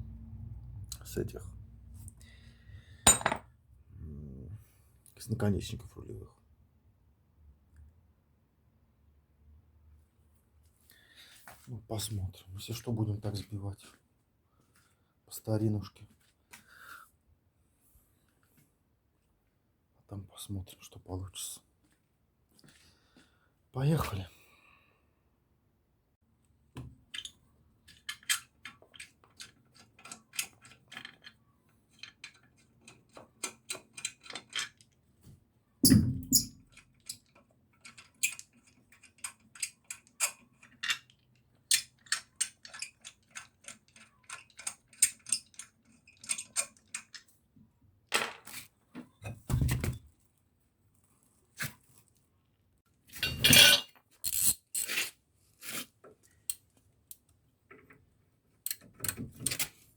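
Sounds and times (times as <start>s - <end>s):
metal hand tools clinking: 53.2s - 54.6s.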